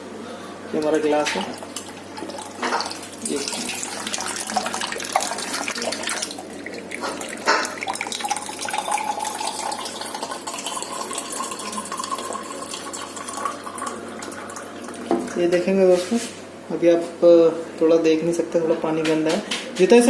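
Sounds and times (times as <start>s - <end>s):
water running into a glass: 0.8s - 15.5s.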